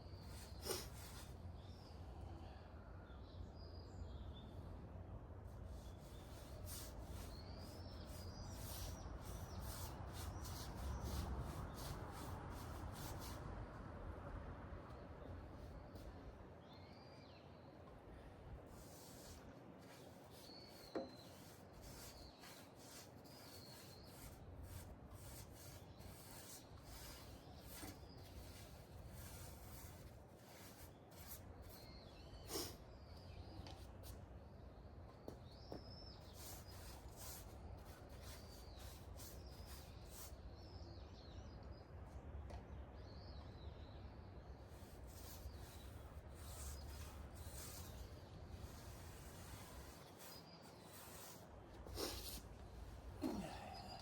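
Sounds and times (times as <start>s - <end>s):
rubbing strokes on wood: 18.8s - 32.8s, 44.7s - 53.7s
birds chirping: 51.9s - 54.0s.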